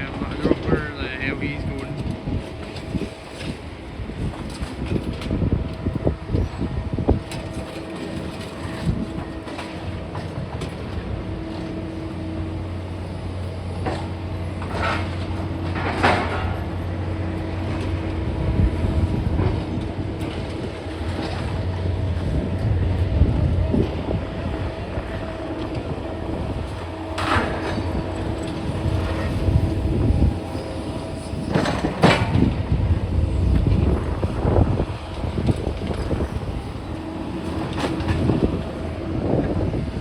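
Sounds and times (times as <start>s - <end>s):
diesel machinery engine drone: 0.0s - 40.0s
metal clanks and knocks: 13.8s - 16.8s.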